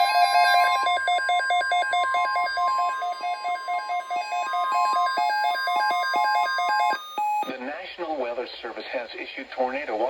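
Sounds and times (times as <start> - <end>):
rapid two-pitch alarm beeping: 0.0 - 7.5
steady warning tone: 0.0 - 7.5.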